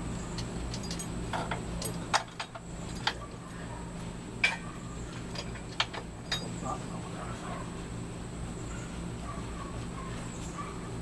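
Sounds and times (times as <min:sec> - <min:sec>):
steady low hum: 0:00.0 - 0:11.0
metal tools clinking: 0:00.4 - 0:03.2, 0:05.3 - 0:06.7.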